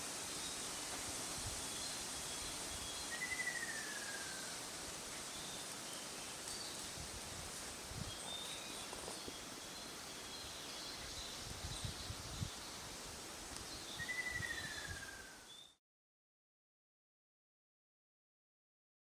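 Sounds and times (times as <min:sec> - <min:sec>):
outdoor ambience hiss: 0:00.0 - 0:15.8
faint high-pitched bird calls: 0:01.7 - 0:06.8, 0:13.8 - 0:15.8.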